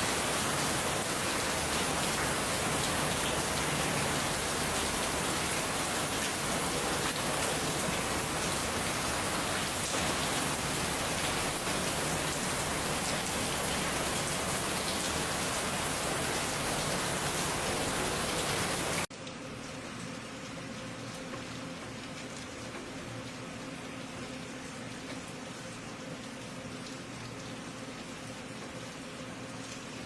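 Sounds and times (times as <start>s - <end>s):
heavy rain pouring: 0.0s - 19.1s.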